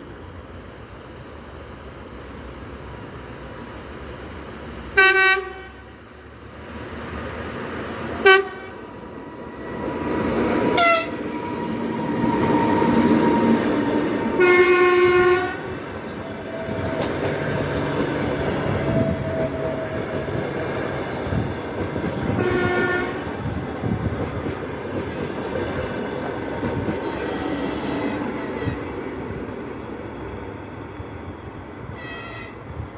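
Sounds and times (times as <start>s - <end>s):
train rumbling: 0.0s - 32.9s
locomotive horn blasts: 5.0s - 5.9s, 8.2s - 8.8s, 10.8s - 11.2s, 14.4s - 15.7s, 22.4s - 23.2s, 32.0s - 32.6s.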